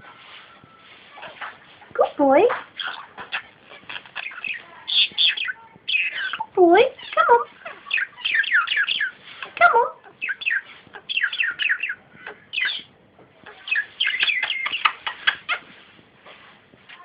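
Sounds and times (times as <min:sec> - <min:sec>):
budgerigar chattering and chirping: 0:02.8 - 0:12.9, 0:13.5 - 0:15.8.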